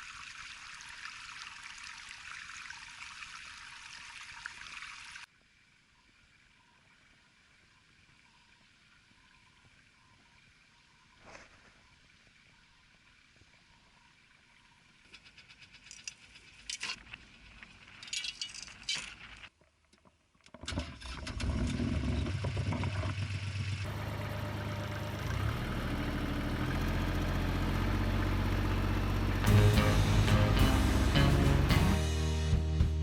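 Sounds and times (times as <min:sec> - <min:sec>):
jingling and rattling clicks: 0:15.1 - 0:17.0
tractor engine running: 0:21.3 - 0:32.2.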